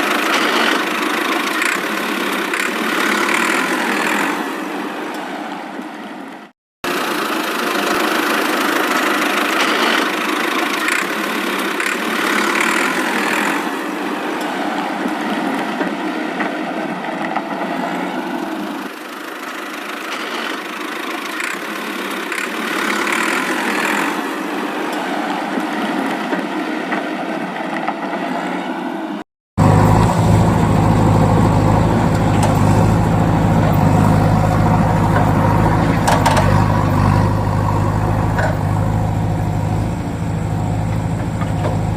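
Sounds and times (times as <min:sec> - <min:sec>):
vehicle engine running: 0:00.0 - 0:05.3, 0:06.8 - 0:26.6, 0:29.6 - 0:41.9.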